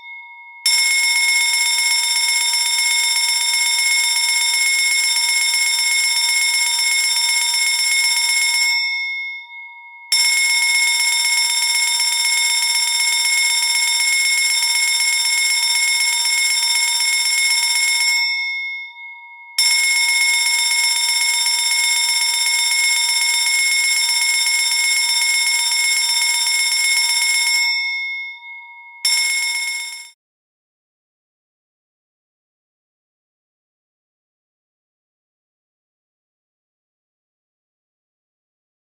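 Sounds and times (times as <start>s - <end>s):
fire alarm bell ringing: 0.0s - 30.2s.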